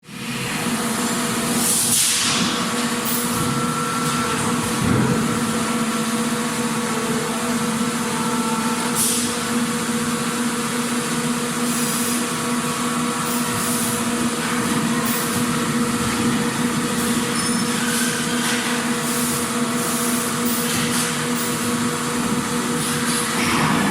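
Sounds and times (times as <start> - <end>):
factory machinery droning: 0.0 - 23.9.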